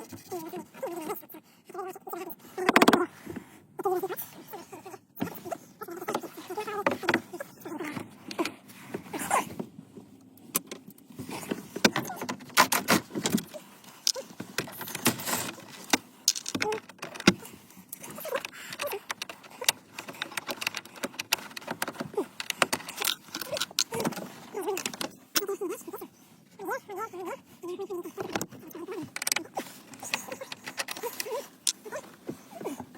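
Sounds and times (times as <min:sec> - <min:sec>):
metal keys clicking and rattling: 0:12.0 - 0:17.4, 0:18.0 - 0:25.5, 0:29.1 - 0:31.8.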